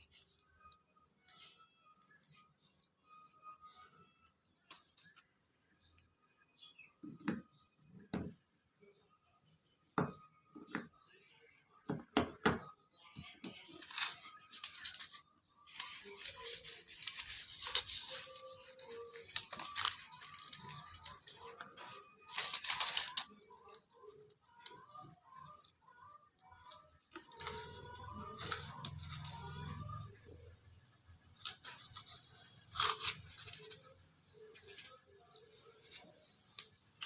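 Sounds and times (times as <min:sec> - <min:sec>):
paper tearing and crinkling: 0:13.6 - 0:24.8, 0:26.7 - 0:30.4, 0:31.3 - 0:37.0.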